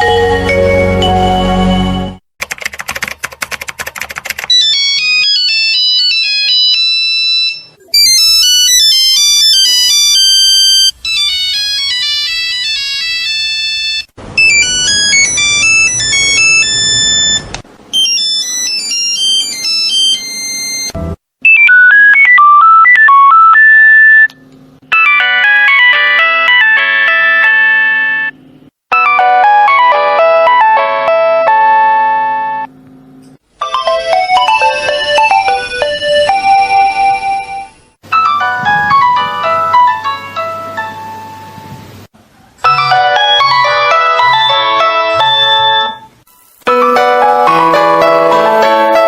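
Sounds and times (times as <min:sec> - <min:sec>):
phone ringtone melodies: 0:00.0 - 0:02.1, 0:04.5 - 0:24.3, 0:24.9 - 0:32.7, 0:33.6 - 0:41.6, 0:42.6 - 0:46.1, 0:46.7 - 0:49.0.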